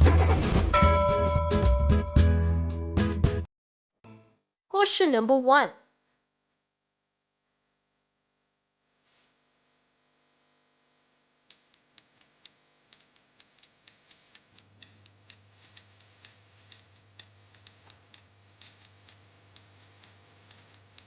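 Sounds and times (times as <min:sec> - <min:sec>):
countdown timer ticking: 0:00.8 - 0:02.5.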